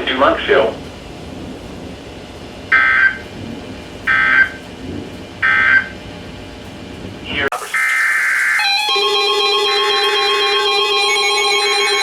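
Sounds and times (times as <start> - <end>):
buzzy two-tone data bursts: 7.6 - 12.0.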